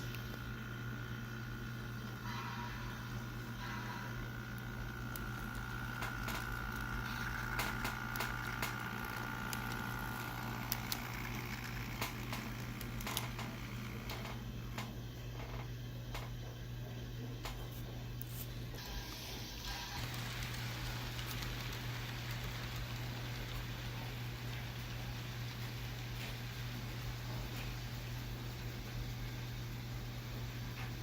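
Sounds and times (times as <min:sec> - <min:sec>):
electric motor whine: 0:00.0 - 0:14.9.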